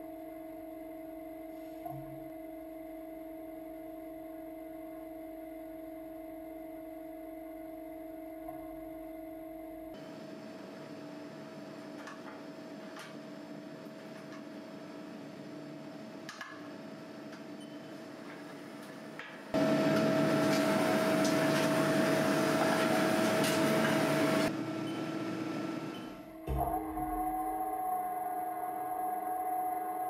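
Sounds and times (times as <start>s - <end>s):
lathe humming with a whine: 19.6s - 30.0s.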